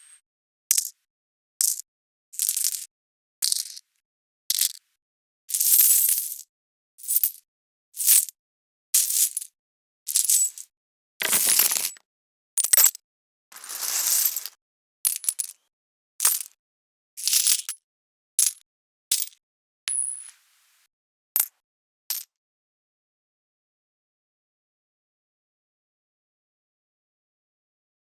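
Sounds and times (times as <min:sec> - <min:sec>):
coins falling and clinking: 0:09.0 - 0:09.4, 0:10.2 - 0:10.6, 0:11.2 - 0:12.0, 0:13.6 - 0:14.6.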